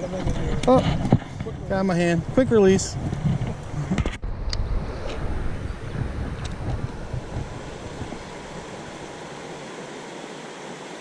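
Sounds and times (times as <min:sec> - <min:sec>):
wind buffeting microphone: 0:00.0 - 0:09.8
river water rushing: 0:04.7 - 0:11.0.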